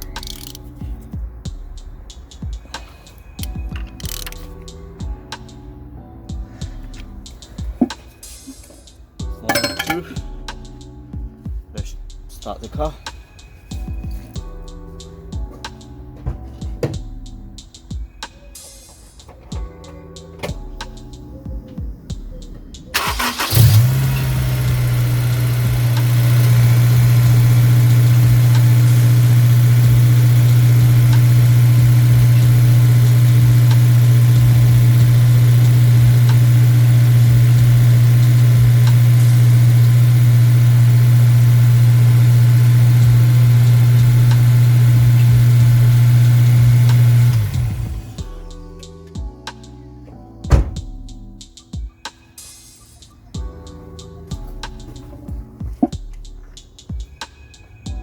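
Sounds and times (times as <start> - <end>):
car engine starting and idling: 0.0 - 0.8, 22.9 - 48.2, 50.5 - 51.3.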